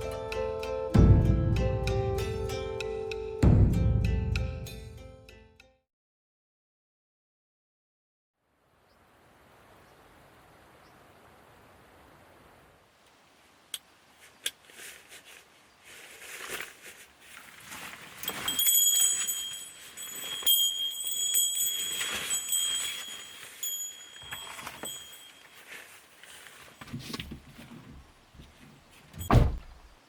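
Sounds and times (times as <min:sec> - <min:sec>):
rustling: 0:14.1 - 0:30.0
small metal bell jingling: 0:18.2 - 0:26.0.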